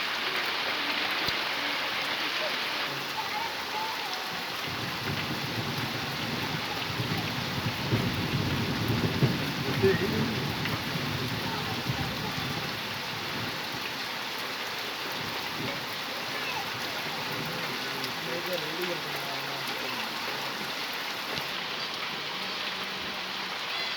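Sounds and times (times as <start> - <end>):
steady rain falling: 0.0 - 23.9.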